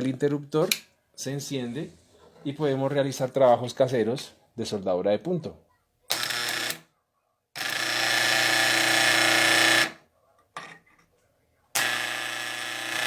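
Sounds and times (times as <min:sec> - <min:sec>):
spot welder buzzing: 0:06.1 - 0:06.9, 0:07.6 - 0:10.0, 0:11.8 - 0:13.0.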